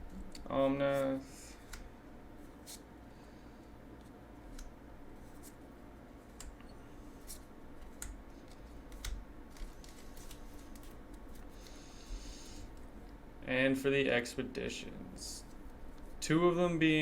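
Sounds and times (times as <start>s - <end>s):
cards clicking and tapping: 7.3s - 11.8s.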